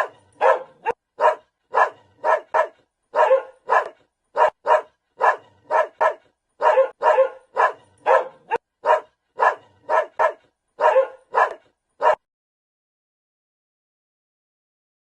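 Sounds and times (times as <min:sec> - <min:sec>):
dog barking: 0:00.0 - 0:12.3.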